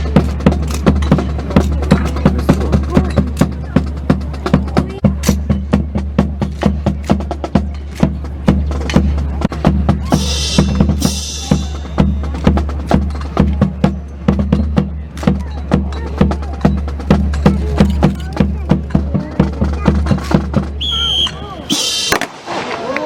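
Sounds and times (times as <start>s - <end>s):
sharp drum strikes: 0.0s - 22.4s.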